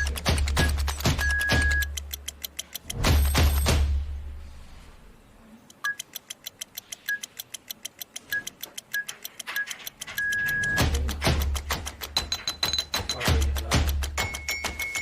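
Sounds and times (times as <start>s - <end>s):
electronic keypad beeps: 0.0s - 2.7s, 5.8s - 11.1s
background music with ticking beat: 0.0s - 4.0s, 5.7s - 15.0s.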